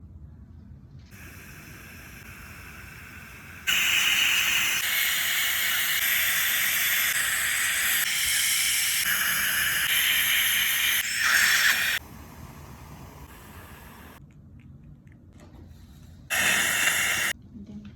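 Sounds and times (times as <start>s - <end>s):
dental equipment hissing: 1.1s - 14.2s, 16.3s - 17.4s.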